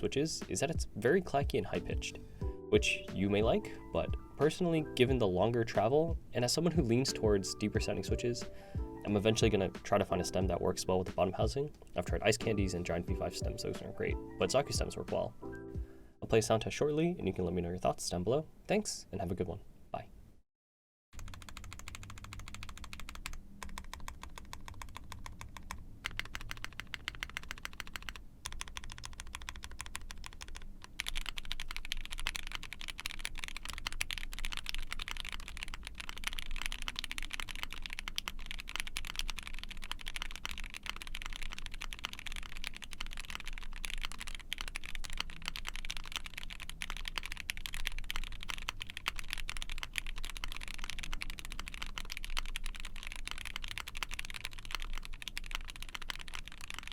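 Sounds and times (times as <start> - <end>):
typing on mechanical keyboard: 21.2 - 56.9.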